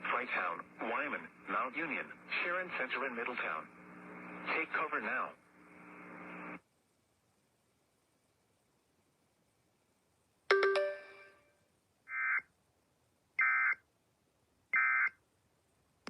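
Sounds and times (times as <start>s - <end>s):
chime tone ringing: 10.5s - 11.4s.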